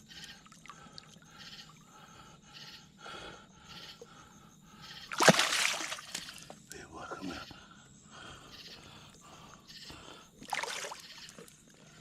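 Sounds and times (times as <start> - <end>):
heavy rhythmic breathing: 6.6 - 10.4.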